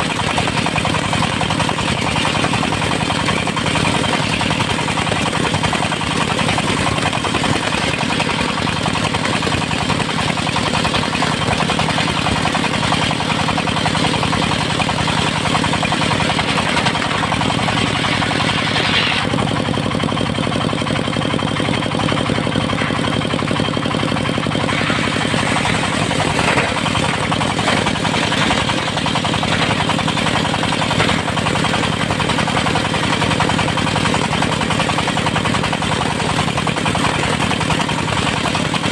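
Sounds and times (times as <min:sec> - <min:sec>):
sawmill engine running: 0:00.0 - 0:38.9.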